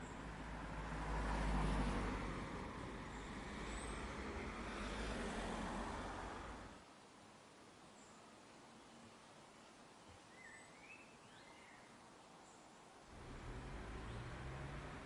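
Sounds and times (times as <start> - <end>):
vehicle rumble and tyre noise: 0.0 - 6.9, 13.0 - 15.0
faint bird chirp: 7.9 - 12.8.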